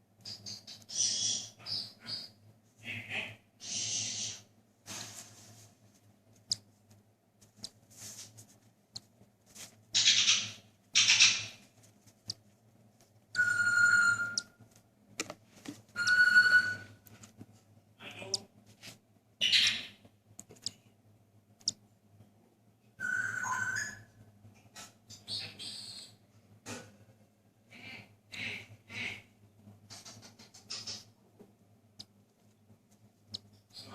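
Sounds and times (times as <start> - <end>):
squeaky whistle-like bird calls: 0.3 - 2.3, 13.4 - 14.5, 16.0 - 17.0, 23.0 - 24.1.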